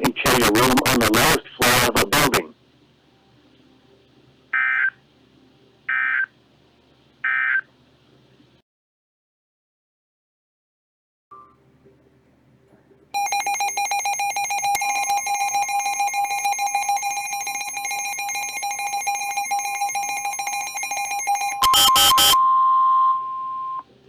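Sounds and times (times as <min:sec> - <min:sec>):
loud data bursts: 0:13.2 - 0:22.4
pulsing electronic alert tone: 0:13.2 - 0:22.4
second steady tone: 0:13.2 - 0:23.9.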